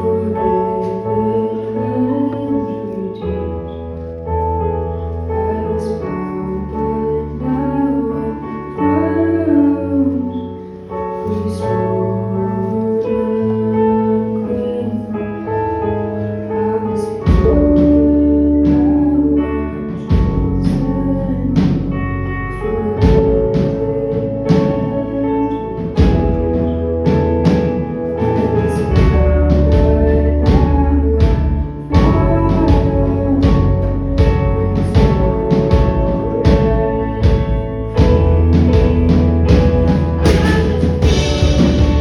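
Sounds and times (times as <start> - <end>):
person singing: 0.0 - 4.0, 5.2 - 42.0
bass line: 0.0 - 42.0
keyboard chords: 0.0 - 42.0
drums: 17.2 - 19.1, 19.9 - 22.2, 23.0 - 42.0.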